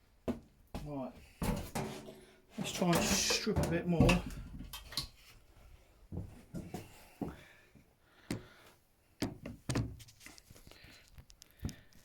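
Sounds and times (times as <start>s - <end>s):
sharp knocks and clunks: 1.4s - 5.0s.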